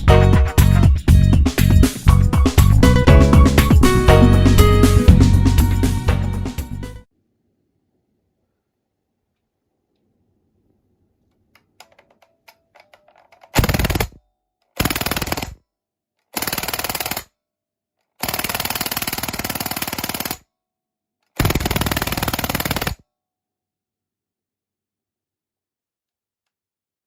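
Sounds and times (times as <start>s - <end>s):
airsoft gun full-auto bursts: 13.5s - 14.2s, 14.8s - 15.6s, 16.3s - 17.4s, 18.2s - 20.5s, 21.4s - 23.0s.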